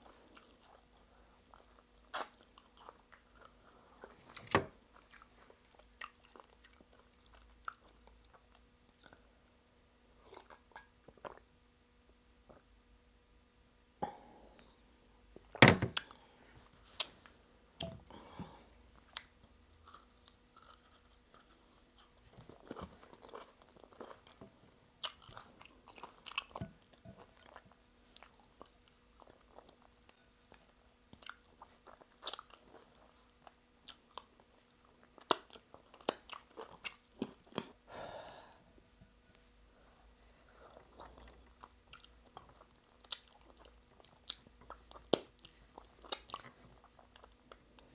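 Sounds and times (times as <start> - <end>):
person chewing wetly: 0.0 - 4.2, 4.9 - 9.3, 10.2 - 11.5, 19.0 - 37.8, 40.5 - 47.9.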